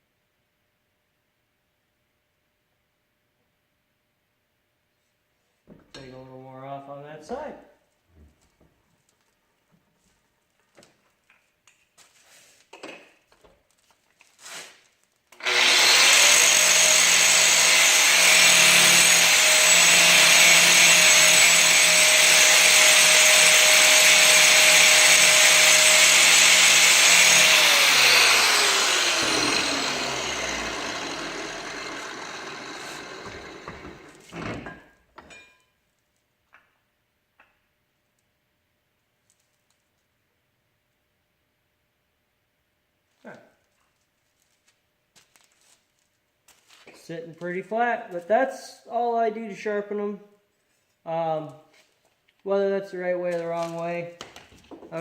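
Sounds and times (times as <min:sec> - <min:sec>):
angle grinder grinding steel: 0:15.4 - 0:34.8.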